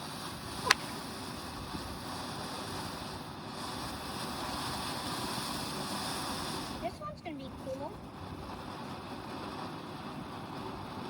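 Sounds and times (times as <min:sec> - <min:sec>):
firework fountain hissing: 0:00.0 - 0:11.0
firework pop: 0:00.5 - 0:01.4.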